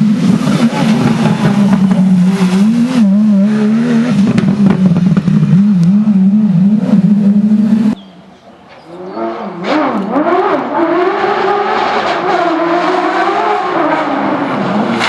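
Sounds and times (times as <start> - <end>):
car engine running hard: 0.0 - 8.3.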